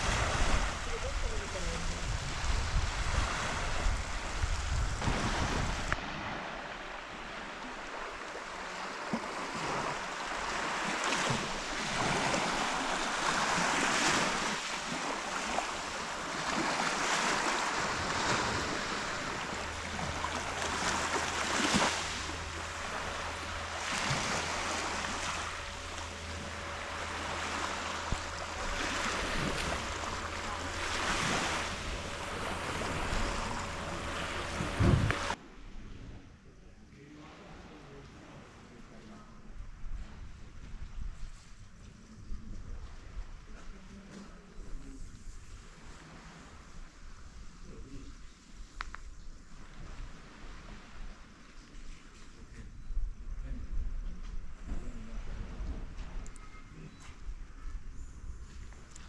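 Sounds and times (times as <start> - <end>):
sea waves washing in: 0.0 - 35.4
steady low hum: 0.0 - 40.6.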